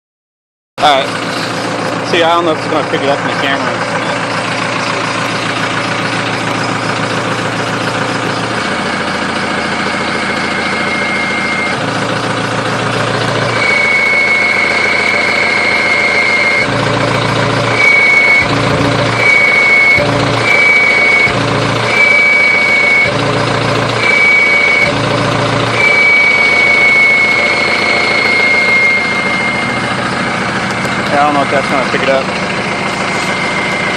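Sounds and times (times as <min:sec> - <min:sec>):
diesel engine idling: 0:00.8 - 0:33.9
high turbo whine: 0:00.8 - 0:33.9.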